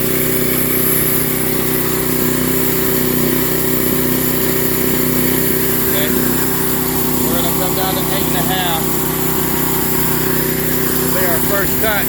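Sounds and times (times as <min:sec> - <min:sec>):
sawmill engine running: 0:00.0 - 0:12.0.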